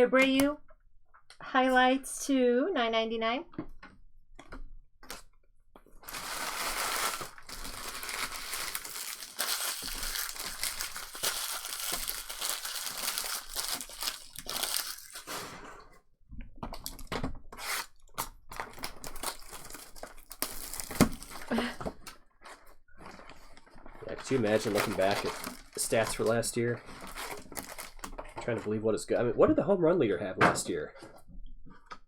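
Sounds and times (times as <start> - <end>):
card wrappers tearing and crinkling: 6.0 - 15.5, 17.6 - 21.6, 24.2 - 28.2.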